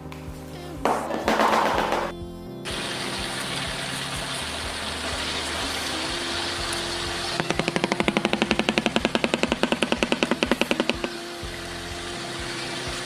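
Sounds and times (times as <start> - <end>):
steady hiss: 2.7 - 13.0.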